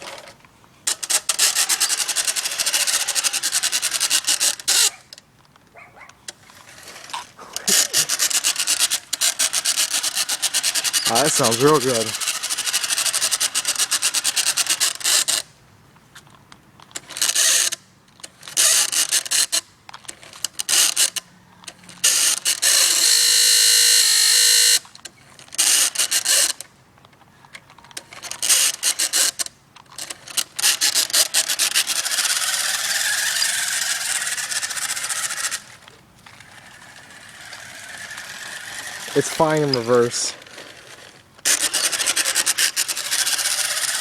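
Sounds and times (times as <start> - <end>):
rapid ratchet clicking: 0.9 - 4.9, 7.7 - 15.4, 30.0 - 35.7, 41.4 - 44.0.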